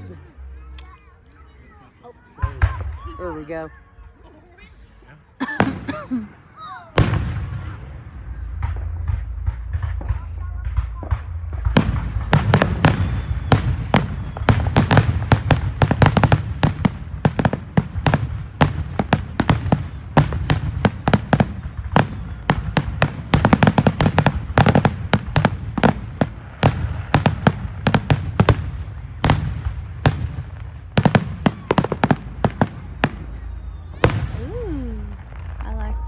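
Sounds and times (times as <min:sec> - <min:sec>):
fireworks bangs and crackles: 0:01.4 - 0:03.8, 0:05.4 - 0:36.0
low rumble: 0:07.0 - 0:14.4.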